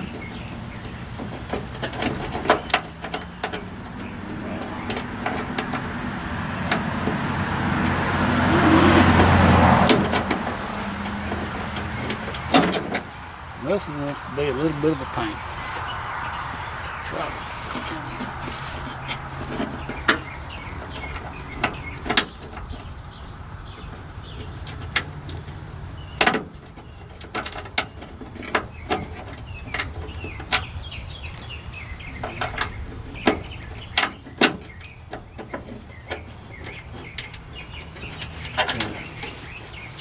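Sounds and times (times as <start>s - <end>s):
cricket chirping: 0.0s - 40.0s.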